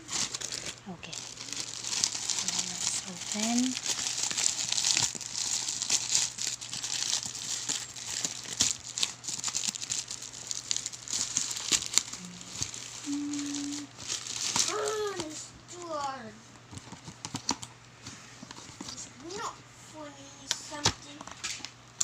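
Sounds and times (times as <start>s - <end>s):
packaging crinkling: 0.0s - 15.4s.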